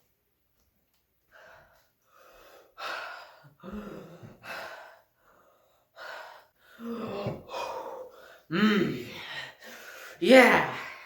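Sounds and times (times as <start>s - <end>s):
person breathing hard: 1.3s - 10.3s
person grunting: 10.2s - 10.9s.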